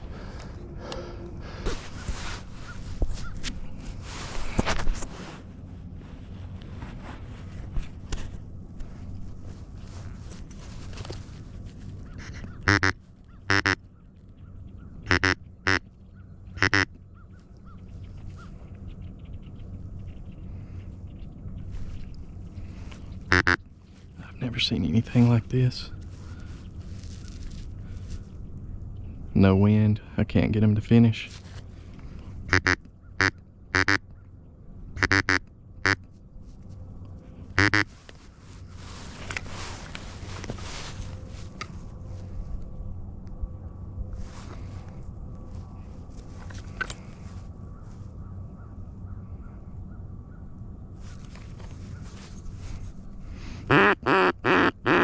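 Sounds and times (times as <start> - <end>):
steady low hum: 0.0 - 55.0
mallard hen quacking: 12.2 - 13.8, 15.1 - 15.8, 16.6 - 16.9, 23.3 - 23.6, 32.5 - 34.0, 35.0 - 36.0, 37.6 - 37.9, 53.7 - 55.0
rustling hiss: 37.6 - 42.4.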